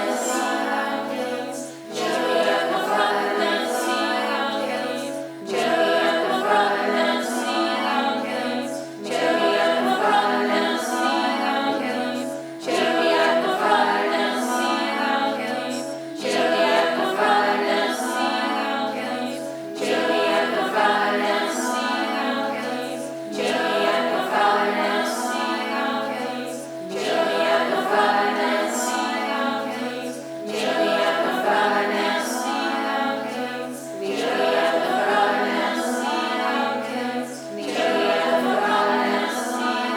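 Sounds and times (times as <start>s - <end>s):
a cappella choir singing: 0.0s - 39.9s.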